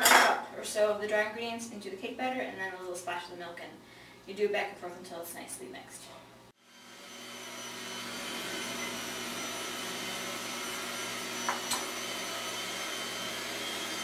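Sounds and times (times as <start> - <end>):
electric mixer running: 6.6 - 14.0.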